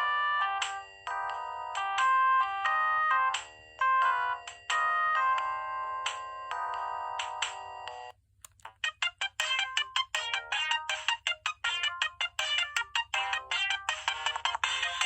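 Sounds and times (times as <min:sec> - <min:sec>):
mobile phone ringtones: 0:00.0 - 0:08.1.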